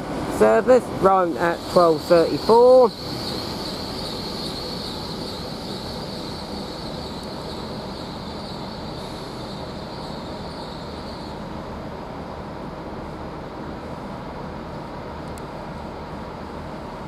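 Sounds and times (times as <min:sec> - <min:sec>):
train rumble: 0:00.0 - 0:17.0
high-pitched squeal: 0:01.1 - 0:11.8.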